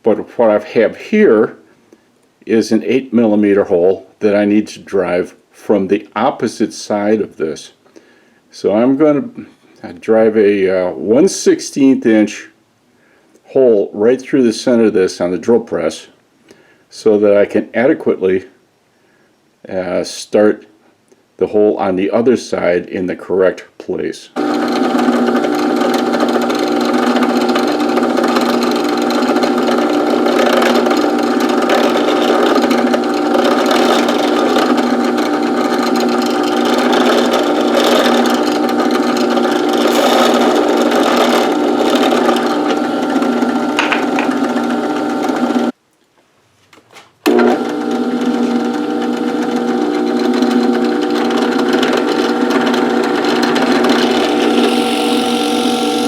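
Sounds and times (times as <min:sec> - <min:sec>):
drill press motor humming: 0:24.4 - 0:45.7, 0:47.2 - 0:56.0.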